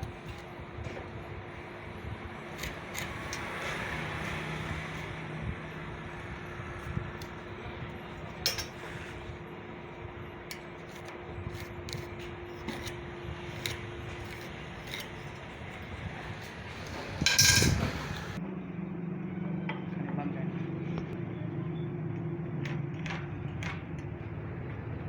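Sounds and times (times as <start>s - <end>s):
tools and wood clicking: 2.6s - 3.9s, 8.4s - 8.9s, 10.5s - 15.5s
scrape: 10.9s - 15.6s.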